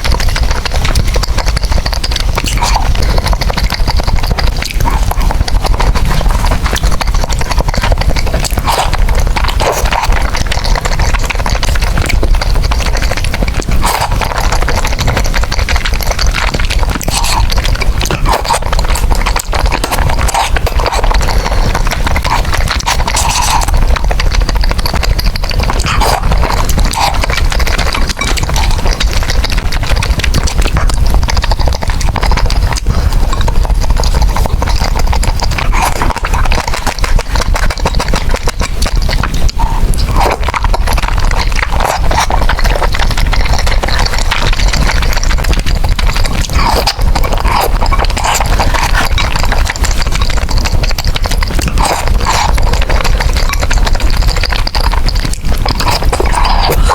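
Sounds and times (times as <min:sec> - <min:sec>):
clicking mouth noises: 0:00.0 - 0:56.9
slurping noodles: 0:00.0 - 0:56.9
wet chewing: 0:00.0 - 0:56.9.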